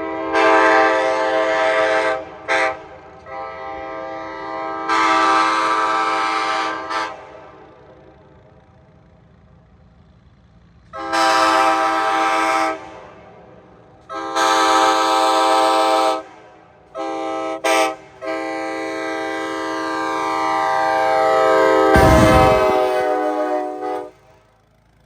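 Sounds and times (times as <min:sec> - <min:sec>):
locomotive air horn chord: 0:00.0 - 0:08.0, 0:10.9 - 0:24.5.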